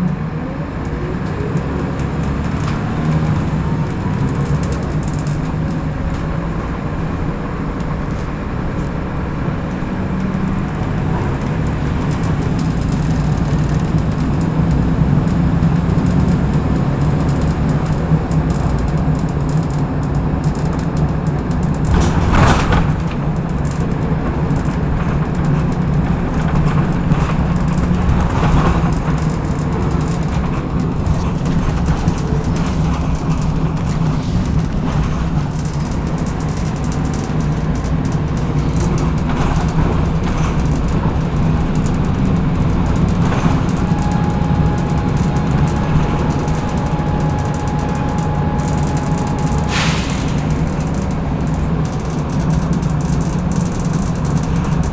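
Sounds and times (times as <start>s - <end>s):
bus engine drone: 0.0s - 54.9s
road noise: 0.0s - 54.9s
loud burst of noise: 43.9s - 52.2s.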